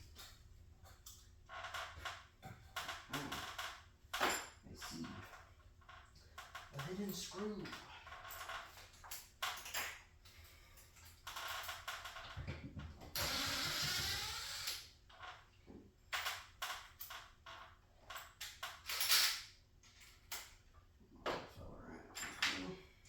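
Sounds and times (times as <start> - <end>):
tools and metal hardware clattering: 1.9 - 5.5, 6.4 - 13.2, 18.0 - 20.5, 22.1 - 22.9.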